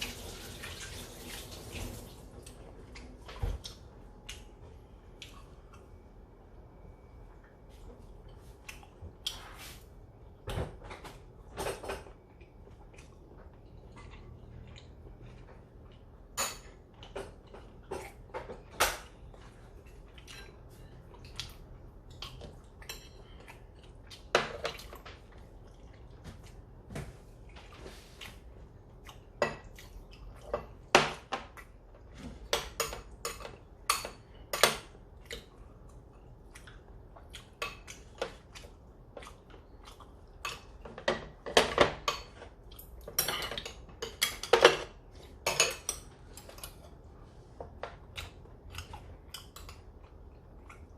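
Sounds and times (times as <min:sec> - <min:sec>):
utensils clinking against plates: 0:40.5 - 0:46.9.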